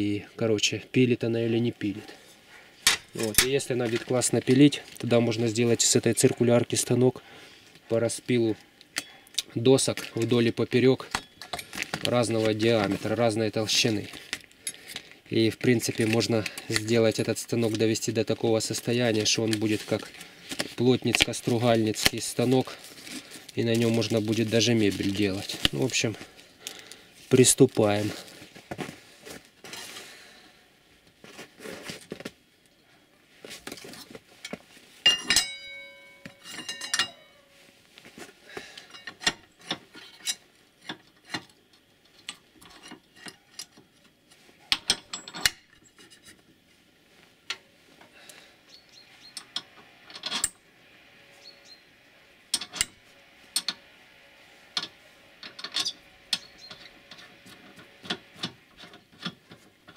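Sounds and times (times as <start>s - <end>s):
metal tools clinking and knocking: 2.8s - 4.2s, 11.0s - 13.0s, 34.4s - 37.5s, 38.8s - 41.5s, 44.7s - 46.4s, 49.3s - 50.6s, 52.5s - 53.8s, 54.8s - 59.9s
metal part ringing: 35.0s - 37.6s.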